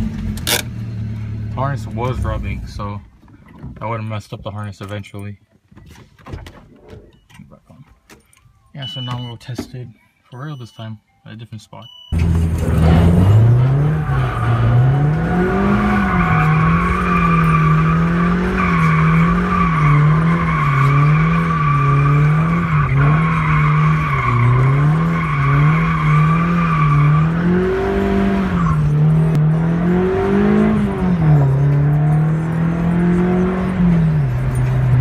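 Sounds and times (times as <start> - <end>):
car engine revving: 12.2 - 35.0
tyres squealing: 12.6 - 27.7.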